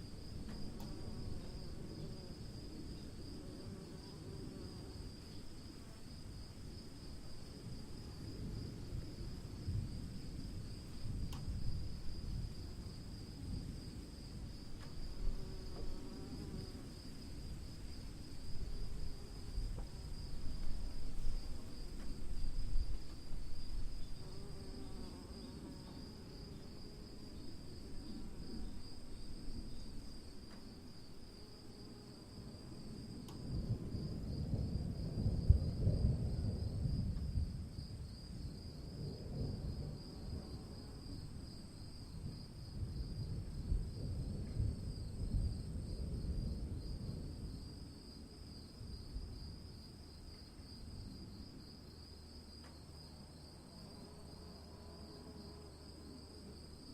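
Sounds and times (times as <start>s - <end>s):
insects trilling: 10.1s - 36.8s
distant thunder rumbling: 33.4s - 40.5s, 42.2s - 47.7s.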